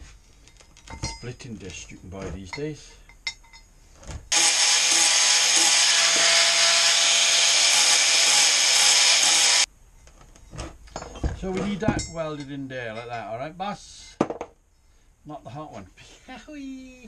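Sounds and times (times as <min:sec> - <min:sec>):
angle grinder cutting metal: 0:04.3 - 0:09.7.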